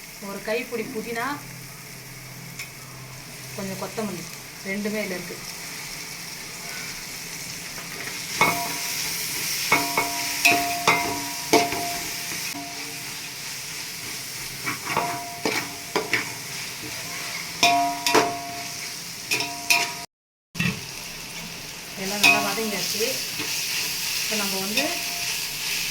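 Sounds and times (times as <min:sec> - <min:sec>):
frying hiss: 0:00.0 - 0:25.9
spoon clinking against pan: 0:09.7 - 0:12.9, 0:17.6 - 0:18.7, 0:19.3 - 0:20.0, 0:22.2 - 0:22.6.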